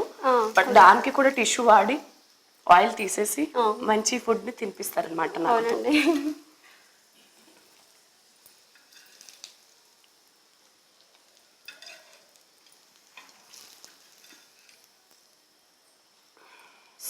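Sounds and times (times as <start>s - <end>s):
oil sizzling in frying pan: 0.0s - 17.0s
spatula scraping and clinking: 7.3s - 9.5s, 11.6s - 14.9s.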